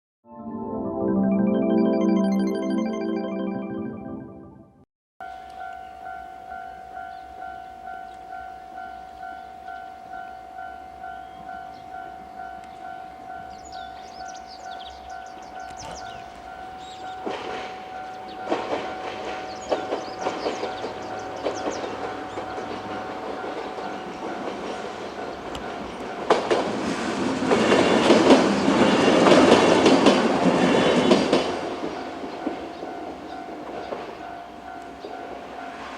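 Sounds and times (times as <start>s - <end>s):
level-crossing alarm ringing: 16.6s - 25.5s
train wheels clattering over rail joints: 18.4s - 32.6s.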